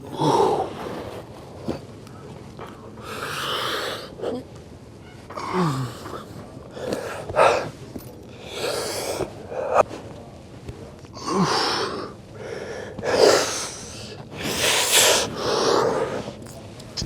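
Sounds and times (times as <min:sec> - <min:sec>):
man breathing hard: 0:08.4 - 0:09.8, 0:11.2 - 0:16.4.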